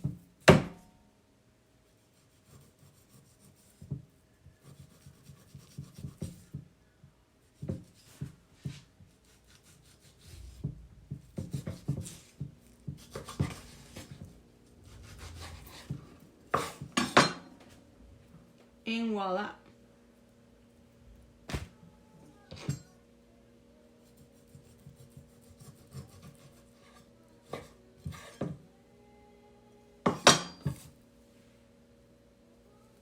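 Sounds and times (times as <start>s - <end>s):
knife scraping meat: 2.1s - 3.8s, 9.1s - 10.7s, 11.4s - 16.0s, 24.0s - 27.1s
knife knocking on cutting board: 10.6s - 14.3s.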